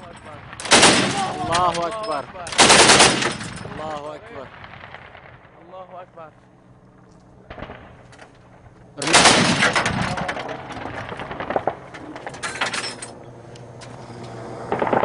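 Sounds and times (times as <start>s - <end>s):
rapid automatic gunfire: 0.6s - 1.6s, 2.5s - 3.6s, 9.0s - 11.9s, 14.7s - 15.0s.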